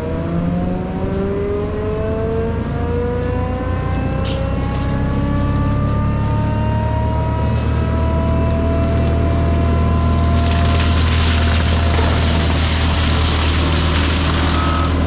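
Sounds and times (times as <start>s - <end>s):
mulcher engine hum: 0.0s - 15.0s
mulching head whine rising: 0.0s - 15.0s.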